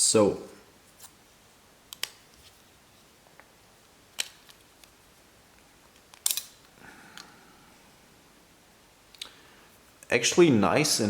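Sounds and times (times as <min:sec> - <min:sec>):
small knife parts clicking: 0:06.1 - 0:06.6.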